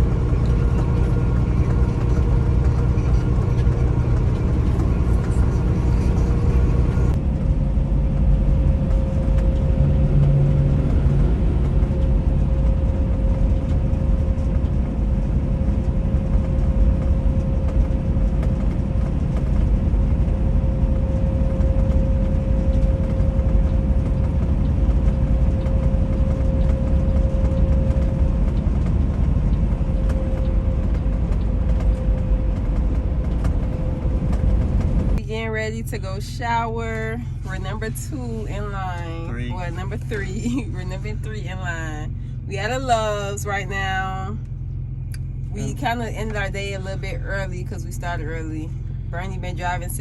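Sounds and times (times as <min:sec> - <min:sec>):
faint constant whine: 0:00.0 - 0:50.0
road noise: 0:00.0 - 0:50.0
truck diesel engine rumble: 0:00.0 - 0:50.0.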